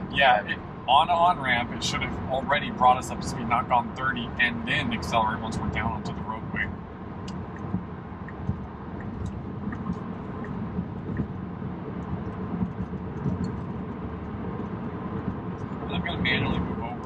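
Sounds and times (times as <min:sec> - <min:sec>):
road and tyre noise in car cabin: 0:00.0 - 0:17.0
faint ticks: 0:07.2 - 0:11.4.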